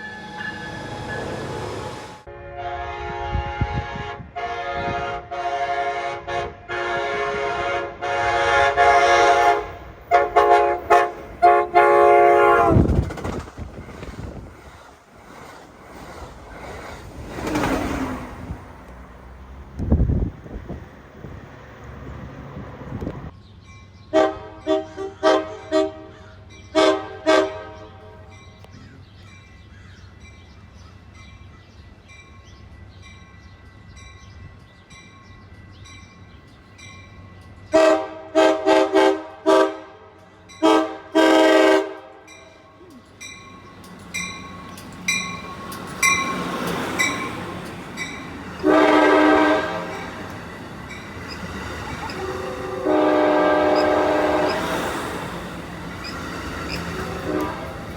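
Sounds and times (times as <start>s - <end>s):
multi-tone train horn: 0.0s - 13.0s, 24.1s - 28.4s, 37.7s - 42.7s, 47.0s - 57.9s
train rumble: 0.0s - 57.9s.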